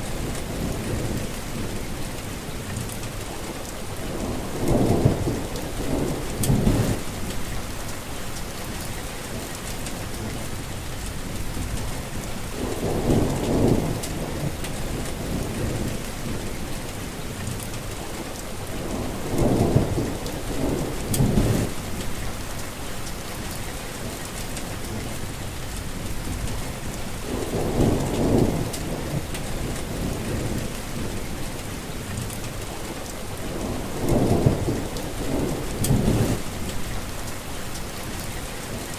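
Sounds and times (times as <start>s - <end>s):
rain falling: 0.0s - 38.9s
thunder rumbling: 4.0s - 8.8s, 11.2s - 17.0s, 18.6s - 22.8s, 25.8s - 31.6s, 32.8s - 38.3s.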